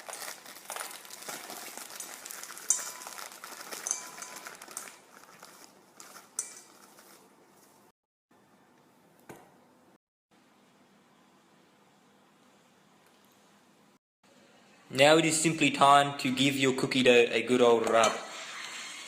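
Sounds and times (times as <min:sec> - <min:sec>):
rustling and crinkling: 0:00.0 - 0:07.9.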